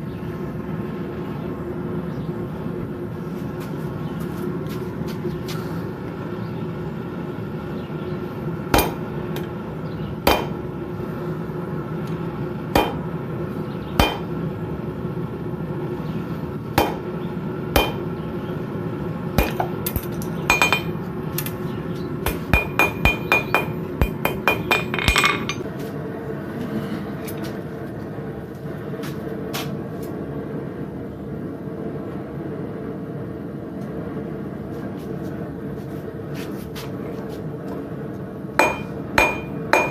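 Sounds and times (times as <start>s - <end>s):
steady hum: 0.0s - 39.9s
hammer striking metal on anvil: 8.7s - 9.5s, 10.2s - 10.6s, 12.8s - 13.1s, 14.0s - 14.3s, 16.8s - 17.1s, 17.8s - 18.1s, 19.4s - 21.0s, 22.2s - 25.6s, 38.6s - 39.9s.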